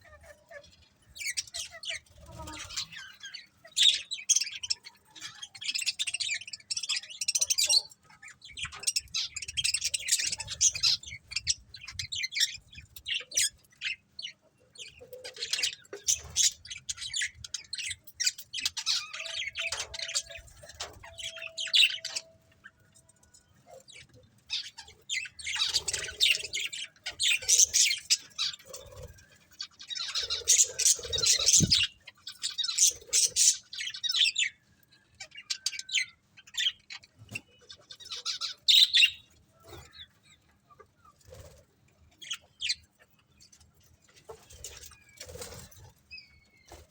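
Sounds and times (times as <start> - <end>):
budgerigars chirping: 1.2 - 22.8, 23.7 - 34.6, 35.3 - 40.1.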